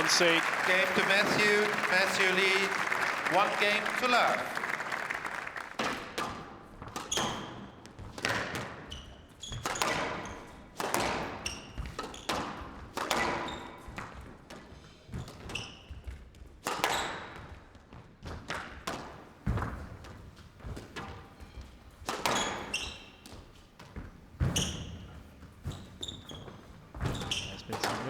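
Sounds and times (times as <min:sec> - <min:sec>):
shoes squeaking on court floor: 0:00.0 - 0:05.7, 0:13.4 - 0:13.9, 0:15.1 - 0:16.0, 0:19.1 - 0:28.0
squash ball hits echoing: 0:22.0 - 0:28.0.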